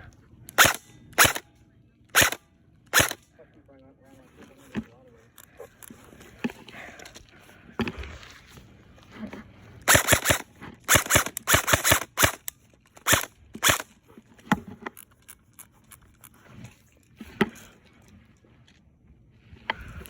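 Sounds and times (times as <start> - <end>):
airsoft guns firing: 0.5 - 1.4, 2.1 - 3.2, 9.9 - 13.9.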